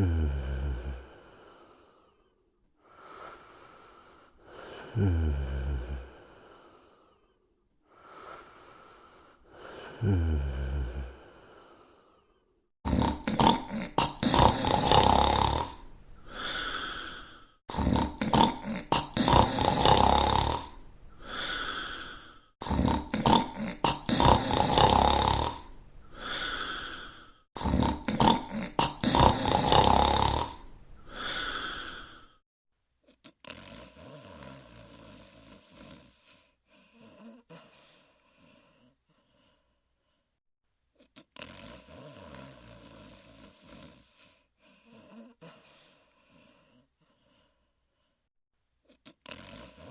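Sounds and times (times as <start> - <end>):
cartoon rattling snores: 12.8 - 15.9, 17.7 - 20.8, 22.6 - 25.7, 27.6 - 31.5, 33.3 - 37.7, 41.1 - 45.6, 49.1 - 49.9.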